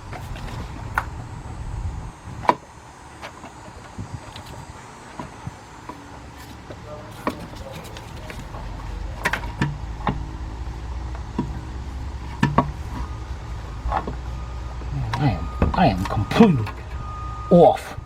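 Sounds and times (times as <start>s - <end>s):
low rumble: 0.0s - 3.0s
knocks and clicks on engine part: 7.2s - 16.9s.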